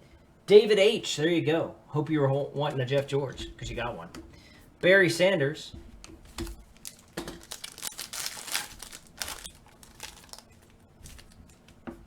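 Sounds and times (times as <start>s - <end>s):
cards and foil wrapper crinkling: 6.4s - 11.8s.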